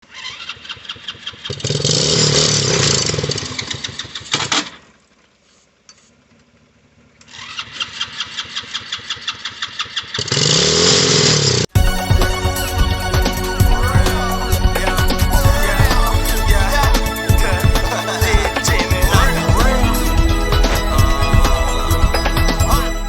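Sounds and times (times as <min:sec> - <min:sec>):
music: 0:11.7 - 0:23.0.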